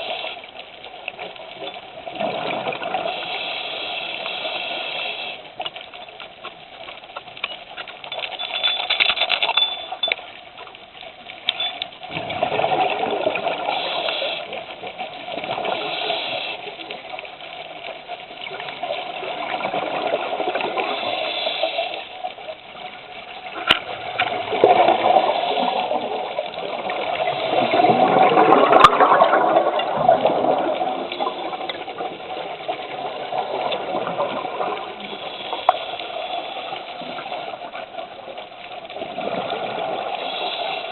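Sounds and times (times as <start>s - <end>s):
exhaled bubbles rushing: 2.0s - 3.2s, 12.1s - 13.9s, 18.7s - 21.0s, 23.5s - 35.4s, 38.9s - 40.9s
regulator hissing inhales: 3.1s - 5.5s, 13.8s - 14.6s, 21.0s - 22.1s, 40.2s - 40.9s.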